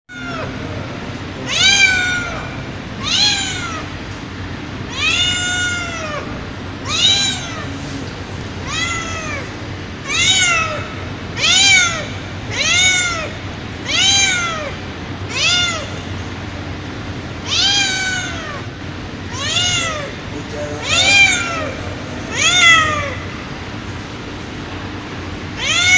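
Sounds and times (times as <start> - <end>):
cat meowing: 0.1 - 0.6, 1.5 - 3.9, 4.9 - 8.0, 8.6 - 16.0, 17.4 - 18.7, 19.3 - 20.2, 20.8 - 23.4, 25.6 - 25.9.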